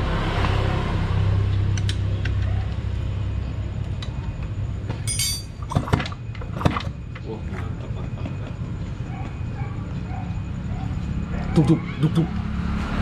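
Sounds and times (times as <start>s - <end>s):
engine rumbling: 0.0s - 13.0s
metal parts jingling: 5.0s - 5.8s.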